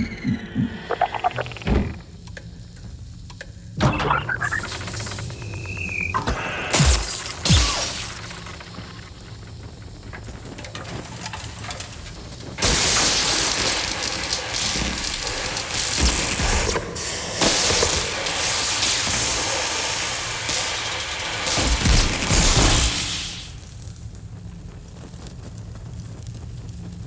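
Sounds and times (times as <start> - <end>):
mechanical texture: 0.0 - 2.3, 3.9 - 23.8
loud hissing rush: 4.6 - 23.9.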